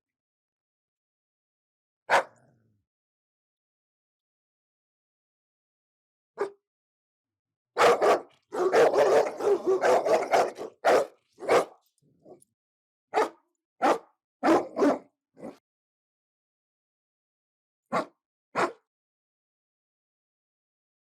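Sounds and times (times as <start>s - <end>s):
dog barking: 2.1s - 2.5s, 6.4s - 6.6s, 7.8s - 11.8s, 13.2s - 15.6s, 17.9s - 18.9s.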